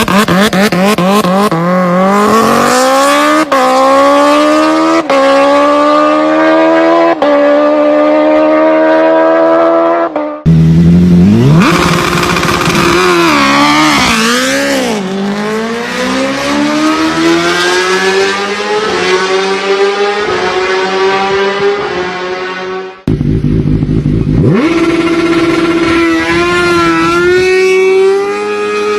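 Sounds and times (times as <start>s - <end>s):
motorcycle engines revving: 0.0s - 28.9s.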